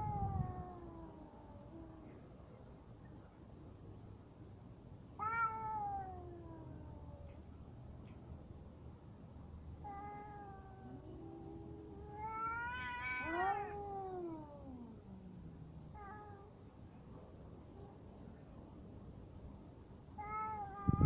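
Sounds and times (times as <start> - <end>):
cats yowling: 9.8 - 15.3.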